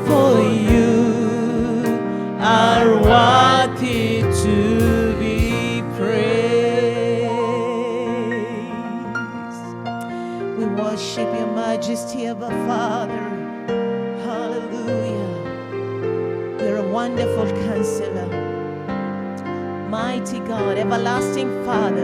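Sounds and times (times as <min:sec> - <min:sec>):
person singing long notes: 0:00.0 - 0:09.1
keyboard chords: 0:00.0 - 0:22.0.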